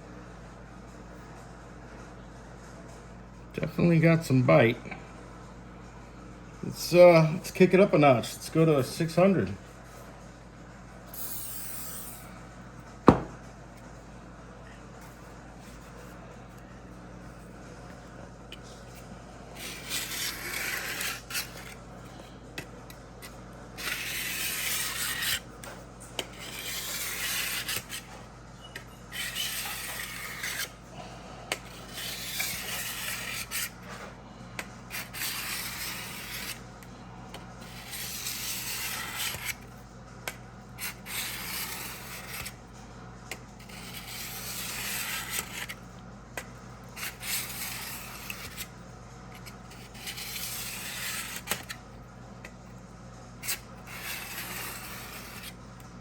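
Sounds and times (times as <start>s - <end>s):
sharpening block rubbing on blade: 19.6s - 21.8s, 23.8s - 25.4s, 26.3s - 28.0s, 29.1s - 30.7s, 31.7s - 33.7s, 34.9s - 36.6s, 37.7s - 39.5s, 40.8s - 42.5s, 43.7s - 45.7s, 47.0s - 48.6s, 53.4s - 55.5s.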